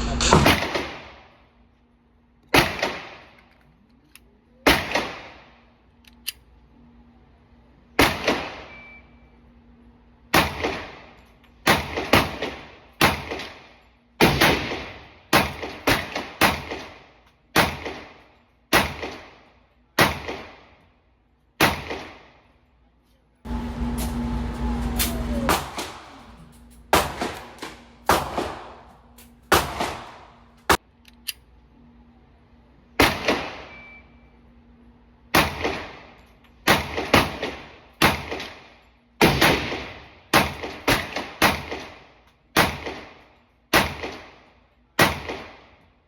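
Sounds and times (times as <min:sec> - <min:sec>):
pistol shots with ringing echo: 0:00.4 - 0:01.4, 0:02.5 - 0:03.4, 0:04.6 - 0:05.6, 0:08.0 - 0:09.2, 0:10.3 - 0:20.8, 0:21.6 - 0:22.4, 0:25.0 - 0:30.5, 0:33.0 - 0:34.2, 0:35.3 - 0:45.8.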